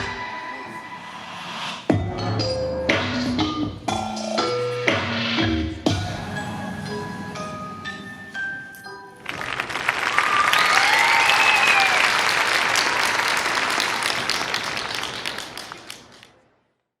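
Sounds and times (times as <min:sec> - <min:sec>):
audience applause: 0:09.2 - 0:16.4.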